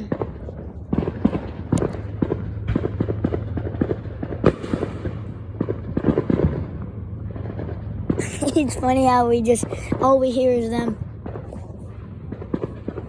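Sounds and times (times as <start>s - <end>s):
loud firework bang: 0.0s - 8.3s, 11.0s - 13.0s
fireworks popping and cracking: 0.0s - 13.0s.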